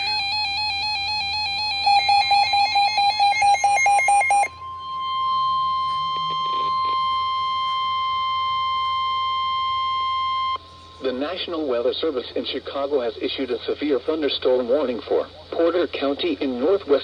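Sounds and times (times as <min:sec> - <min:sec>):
warbling electronic alarm beeps: 0:00.0 - 0:10.6
steady warning tone: 0:00.0 - 0:17.0.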